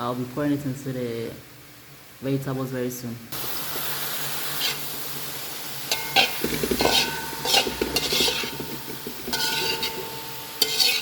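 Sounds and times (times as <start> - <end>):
light sizzle: 3.3 - 11.0
utensil scraping a frying pan: 4.5 - 4.9, 5.9 - 11.0.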